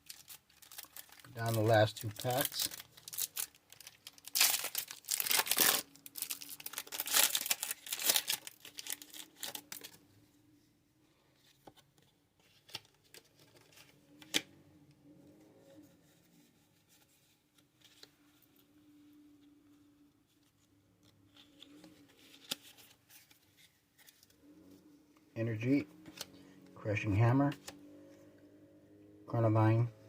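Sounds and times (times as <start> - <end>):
foil wrapper tearing and crinkling: 0.0 - 10.0.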